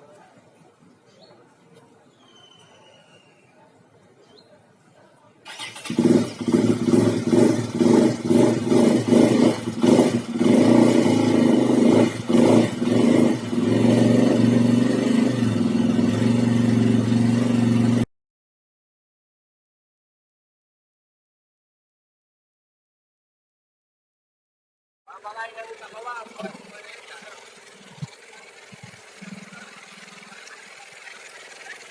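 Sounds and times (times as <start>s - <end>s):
engine revving: 5.5s - 18.1s, 25.6s - 31.9s.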